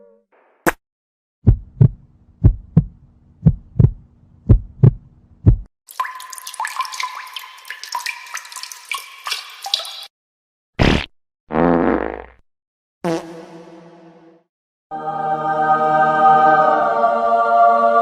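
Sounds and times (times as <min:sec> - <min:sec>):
heartbeat thumps: 0:01.4 - 0:05.7.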